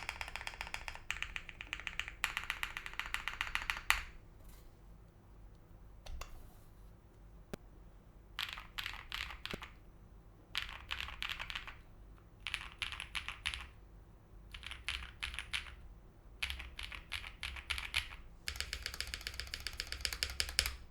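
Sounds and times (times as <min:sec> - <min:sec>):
mechanical keyboard typing: 0:00.0 - 0:04.1, 0:08.4 - 0:09.8, 0:10.6 - 0:11.8, 0:12.4 - 0:13.8, 0:14.5 - 0:15.8, 0:16.4 - 0:20.9.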